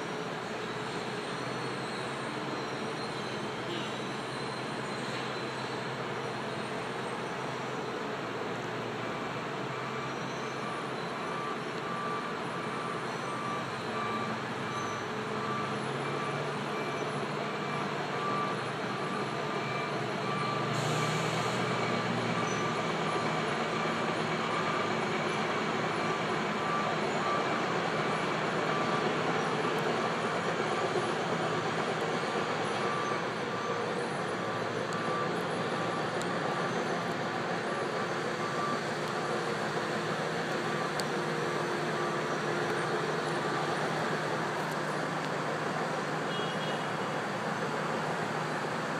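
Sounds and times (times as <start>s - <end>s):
reversing alarm beeping: 0.1s - 8.0s, 9.7s - 48.8s
heavy machinery running: 10.0s - 46.4s.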